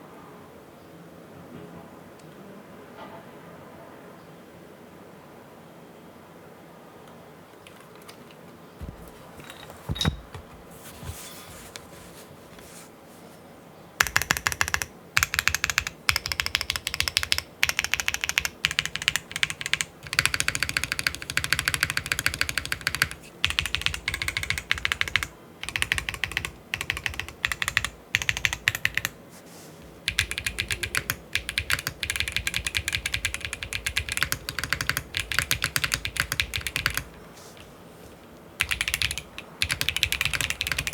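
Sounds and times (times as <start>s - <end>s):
typing on mechanical keyboard: 7.6s - 8.6s, 14.0s - 29.2s, 30.0s - 37.2s, 38.6s - 40.9s.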